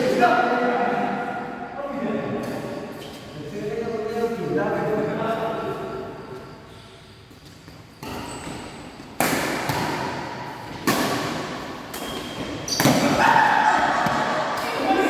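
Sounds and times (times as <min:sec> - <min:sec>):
rackets hitting shuttlecock: 0:08.0 - 0:14.9.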